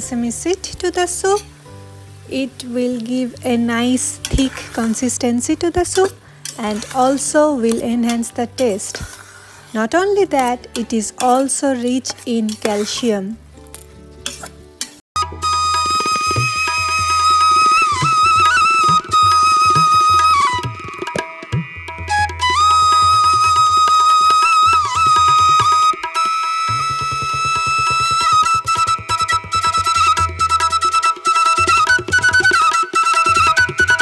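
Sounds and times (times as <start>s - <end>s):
gliding instrumental melody: 15.2s - 34.0s
hand drum rhythm: 15.2s - 34.0s.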